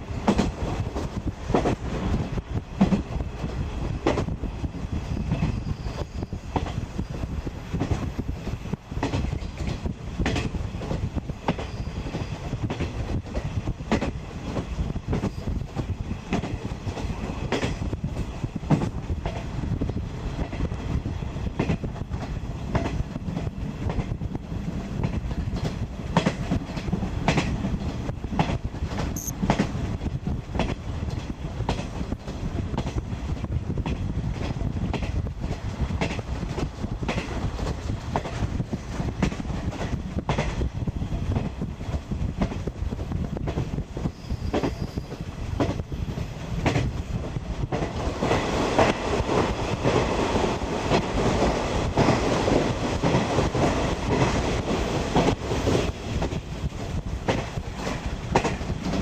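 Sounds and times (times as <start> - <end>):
train wheels rumbling on rail: 0.0 - 59.0
rail joint clicks: 0.1 - 59.0.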